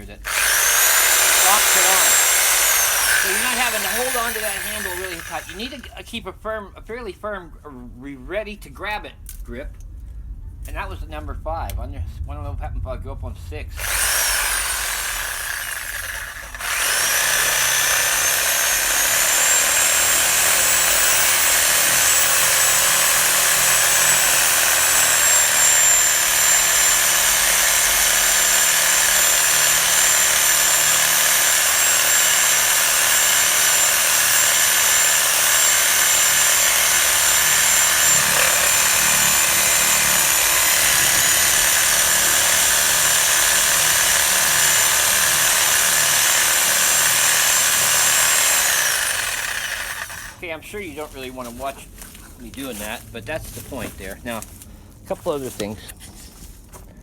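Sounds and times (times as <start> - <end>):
reciprocating saw cutting wood: 0.0 - 6.0, 13.8 - 51.8.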